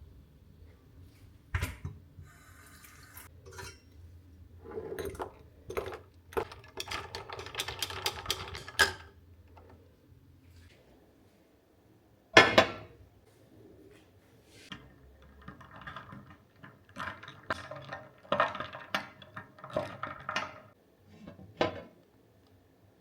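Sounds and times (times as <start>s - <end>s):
objects clinking and clattering: 4.9s - 9.7s.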